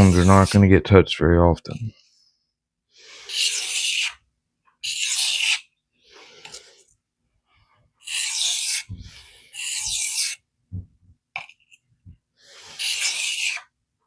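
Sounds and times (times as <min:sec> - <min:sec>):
knife scraping on sharpening stone: 0:03.2 - 0:04.2, 0:04.8 - 0:05.7, 0:08.0 - 0:08.9, 0:09.5 - 0:10.4, 0:12.6 - 0:13.7.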